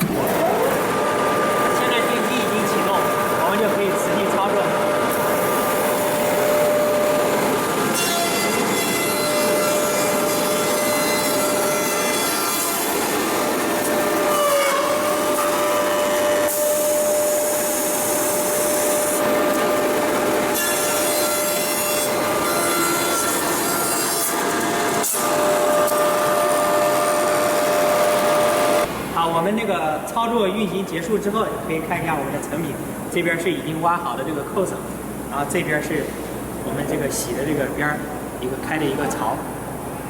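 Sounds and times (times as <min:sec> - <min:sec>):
machine cutters whining: 0:00.0 - 0:28.9.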